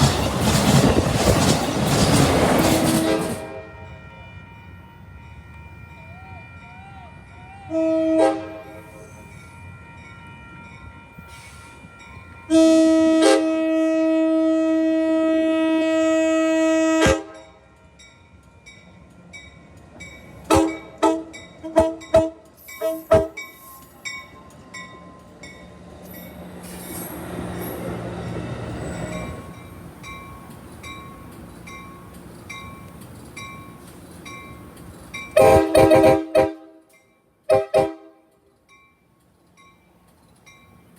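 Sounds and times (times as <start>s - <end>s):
train rumbling: 0.0s - 40.9s
train air horn blasts: 2.9s - 4.5s, 6.4s - 11.9s, 12.5s - 17.6s, 20.4s - 23.4s, 35.4s - 36.9s, 37.5s - 38.3s.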